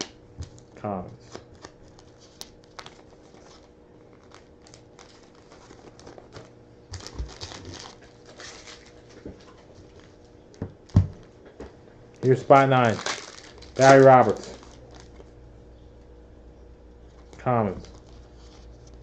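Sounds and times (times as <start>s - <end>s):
wrapper crinkling: 1.3s - 10.2s, 12.2s - 15.3s.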